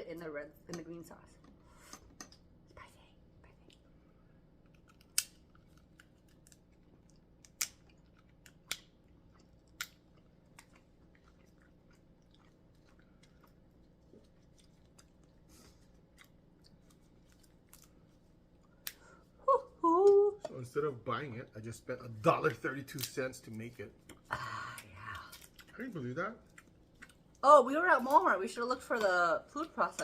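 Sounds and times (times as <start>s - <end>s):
person chewing: 4.6s - 19.4s, 24.0s - 25.8s, 26.4s - 27.4s.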